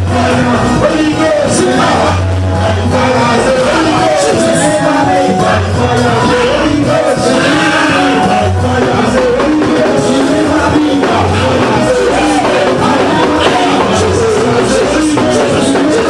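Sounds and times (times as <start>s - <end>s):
repeating bass note: 0.0s - 15.8s
live band playing: 0.0s - 16.0s
voices singing: 0.0s - 16.0s.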